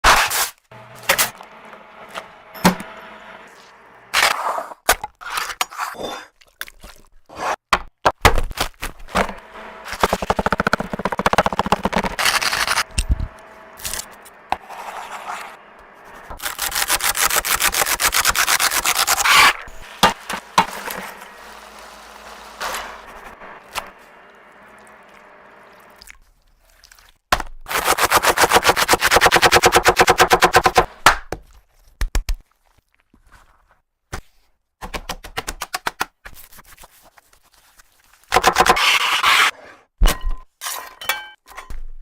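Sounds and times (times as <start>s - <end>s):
scraping and rubbing strokes: 12.2s - 23.9s.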